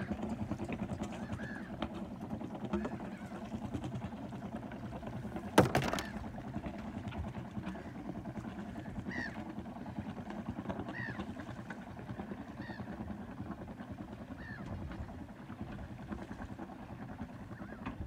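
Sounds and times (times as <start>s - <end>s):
bird calling: 1.1s - 1.9s, 8.6s - 9.5s, 10.8s - 11.3s, 12.5s - 13.0s, 14.4s - 14.6s.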